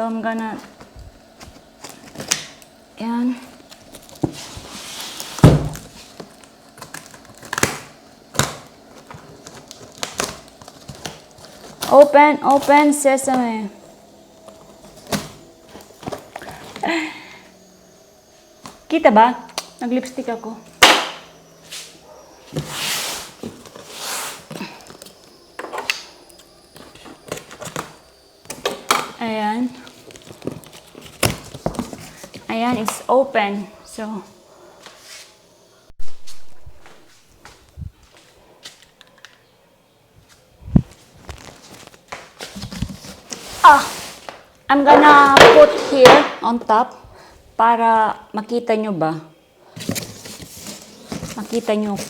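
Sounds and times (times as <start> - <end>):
cardboard flaps scraping: 3.9 - 7.7, 21.7 - 24.8, 40.7 - 46.3, 49.8 - 52.0.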